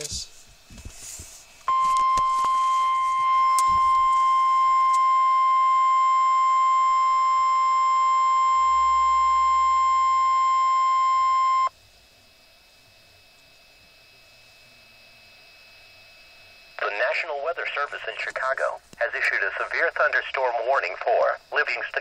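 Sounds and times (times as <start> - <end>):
steady alarm beep: 1.7 - 11.7.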